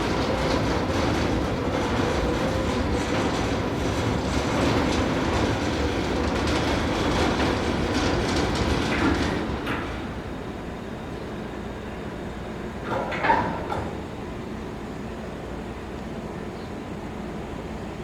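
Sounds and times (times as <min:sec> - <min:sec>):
wheels clicking over rails: 0:00.0 - 0:10.2
tram rumbling on track: 0:00.0 - 0:18.0.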